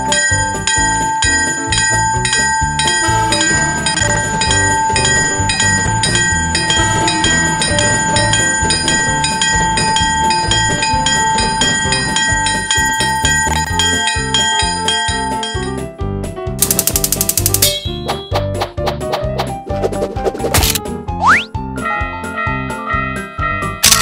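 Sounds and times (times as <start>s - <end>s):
railroad crossing bell ringing: 0.0s - 15.9s, 22.4s - 24.0s
background music with bass line: 0.0s - 23.8s.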